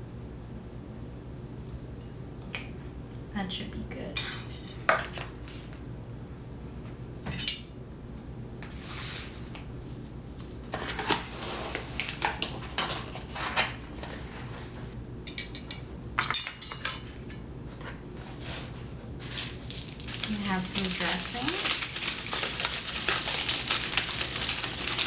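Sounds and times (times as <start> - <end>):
cutlery clinking on dishes: 15.3 - 17.4.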